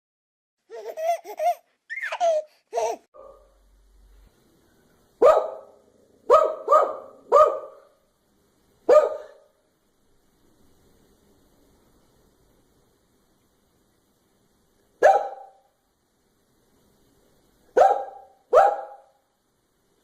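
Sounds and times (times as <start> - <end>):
dog barking: 3.2 - 3.5, 5.2 - 8.0, 8.9 - 9.5, 15.0 - 15.7, 17.7 - 19.2.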